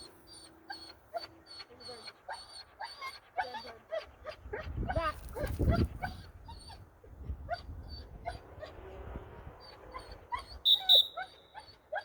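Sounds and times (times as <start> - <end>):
dog whining and yipping: 0.0 - 6.8, 7.4 - 8.8, 9.6 - 12.0
shrill whistle blast: 10.7 - 11.4.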